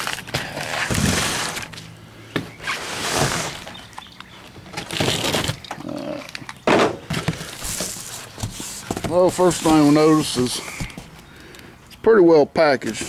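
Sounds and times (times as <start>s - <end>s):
cardboard box being torn open: 0.0s - 1.8s, 4.8s - 5.6s
rustling of cardboard and packing: 0.0s - 11.4s.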